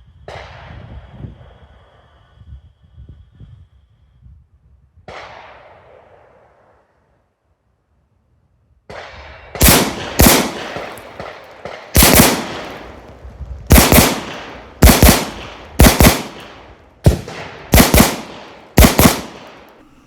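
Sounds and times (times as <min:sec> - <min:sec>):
handgun shots in pairs: 0:08.9 - 0:13.0, 0:13.7 - 0:20.0.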